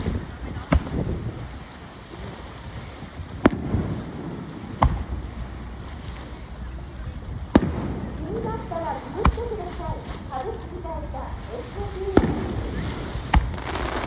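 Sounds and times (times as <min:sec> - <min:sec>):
low background rumble: 0:02.4 - 0:14.0
fireworks bangs: 0:03.2 - 0:06.4, 0:07.1 - 0:14.0.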